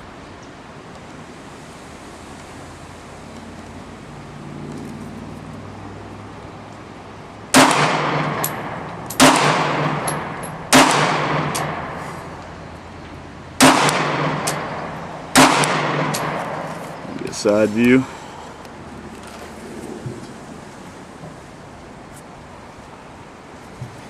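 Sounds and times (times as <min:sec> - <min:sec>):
pistol shots echoing: 0:07.5 - 0:12.0, 0:13.6 - 0:16.7.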